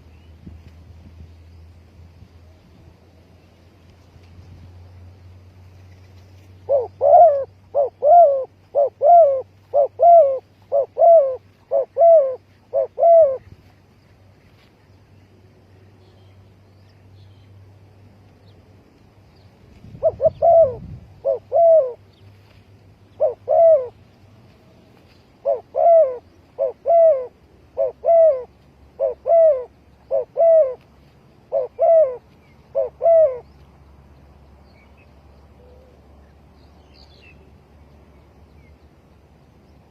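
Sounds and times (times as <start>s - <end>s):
dove cooing: 6.6s - 13.6s, 19.9s - 22.0s, 23.1s - 24.0s, 25.4s - 30.8s, 31.4s - 33.6s.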